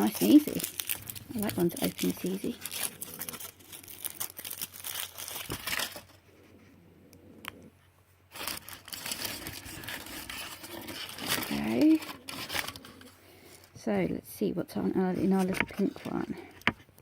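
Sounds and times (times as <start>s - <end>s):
foil wrapper crinkling: 0.0s - 6.2s, 8.3s - 13.7s.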